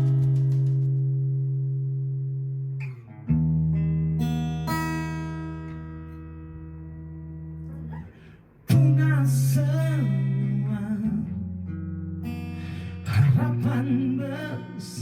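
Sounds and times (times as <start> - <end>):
acoustic guitar strumming: 0.0 - 15.0
person singing wordless line: 13.0 - 15.0.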